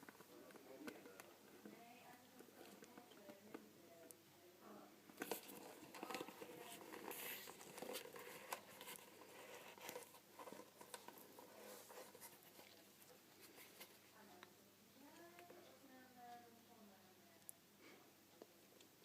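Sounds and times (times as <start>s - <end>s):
packaging rustling: 5.2s - 14.0s.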